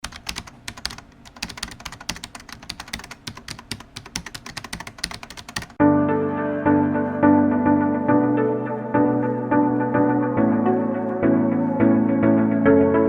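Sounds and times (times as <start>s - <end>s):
keyboard typing clicks: 0.0s - 5.8s
music: 5.8s - 13.0s.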